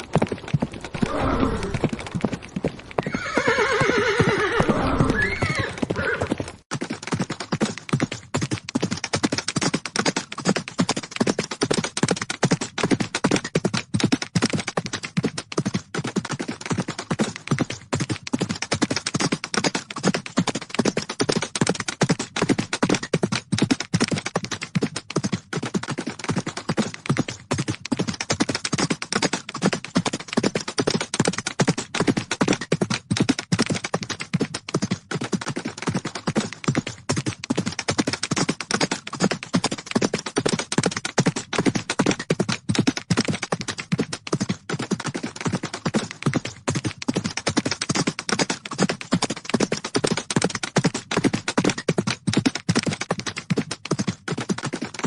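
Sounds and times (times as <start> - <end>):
horses galloping: 0.0 - 55.0.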